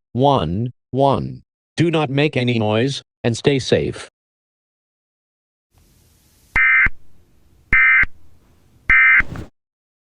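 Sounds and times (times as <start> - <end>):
faint static: 5.8 - 9.0.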